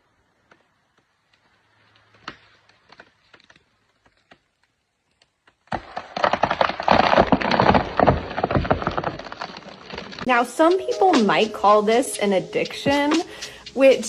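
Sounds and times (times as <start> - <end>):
loud clatter of rapid knocks: 5.7 - 10.2.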